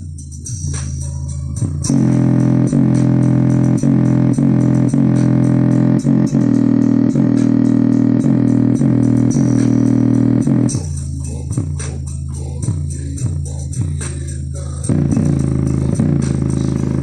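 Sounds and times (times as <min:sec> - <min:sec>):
bass-heavy music over loudspeaker: 0:00.0 - 0:17.0
speaker coil knocking: 0:01.9 - 0:10.9, 0:14.9 - 0:17.0.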